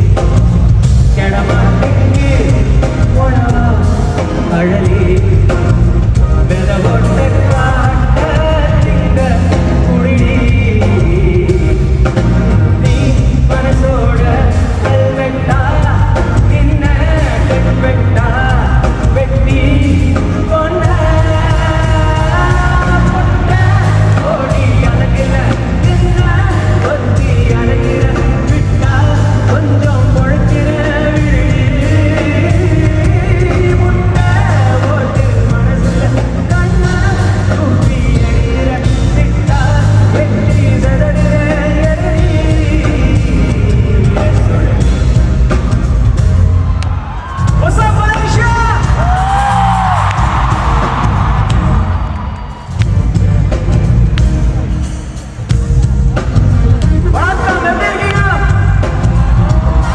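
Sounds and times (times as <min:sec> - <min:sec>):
heavy bass line: 0:00.0 - 0:59.9
live band music: 0:00.0 - 0:59.9.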